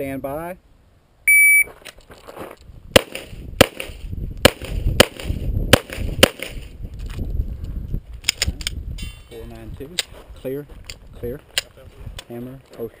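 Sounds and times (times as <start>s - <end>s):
shot timer beep: 1.3s - 1.7s
pistol shots: 3.0s - 6.7s.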